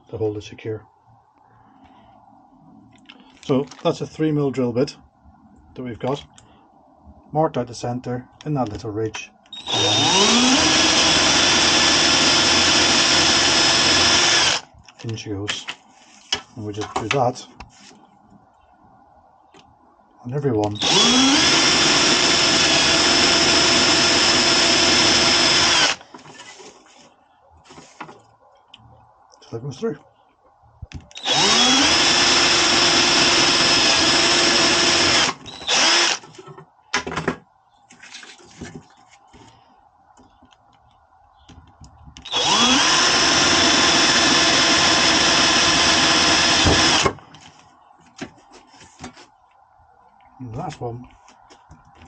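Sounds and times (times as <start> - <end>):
faint handling noises: 2.8 - 4.2, 14.8 - 18.7, 26.0 - 31.1, 36.2 - 42.2, 47.3 - 52.0
power drill drilling: 9.5 - 14.7, 20.8 - 26.1, 31.1 - 36.2, 42.2 - 47.2.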